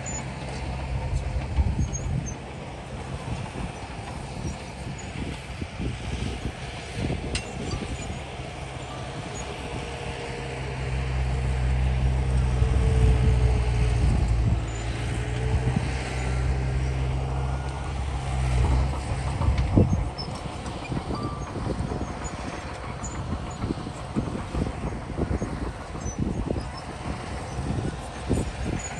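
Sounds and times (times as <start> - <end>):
diesel engine droning: 0.0 - 28.9
metal clanks and knocks: 7.2 - 8.2.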